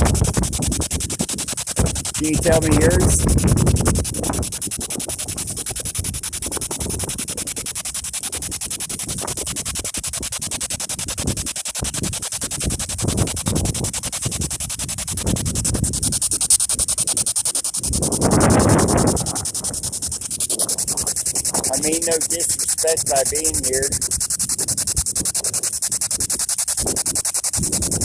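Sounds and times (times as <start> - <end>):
wind buffeting microphone: 0.0 - 28.0
radio static and broadcast fragments: 1.8 - 3.4, 21.5 - 24.0.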